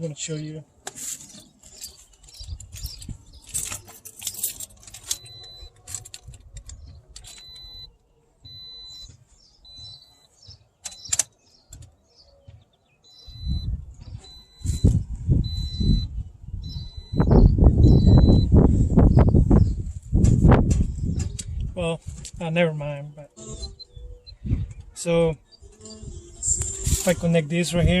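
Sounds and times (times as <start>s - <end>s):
hands clicking and rattling wiring: 0.8s - 7.8s
short high-pitched beeps: 5.1s - 5.8s, 7.3s - 11.2s, 13.0s - 18.6s.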